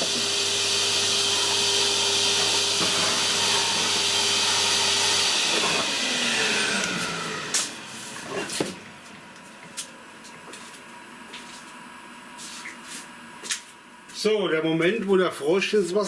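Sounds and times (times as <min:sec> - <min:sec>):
milling machine running: 0:00.0 - 0:09.4.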